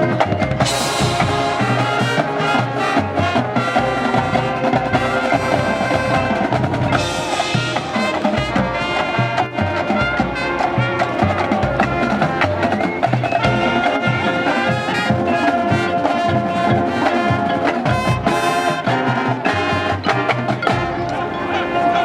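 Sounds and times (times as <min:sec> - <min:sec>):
brass chords: 0:00.0 - 0:22.0
drumline percussion: 0:00.0 - 0:22.0.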